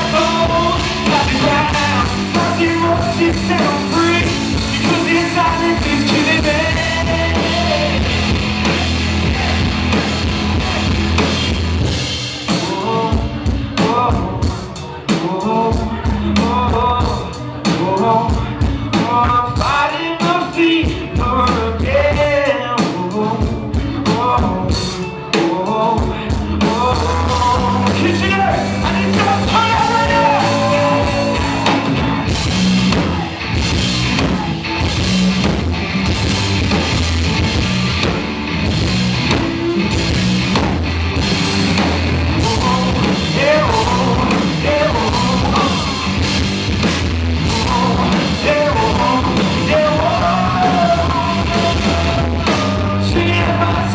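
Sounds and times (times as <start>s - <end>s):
man singing: 0.0s - 10.0s, 12.4s - 33.4s, 42.2s - 46.4s, 47.3s - 53.9s
rock band playing: 0.0s - 53.9s.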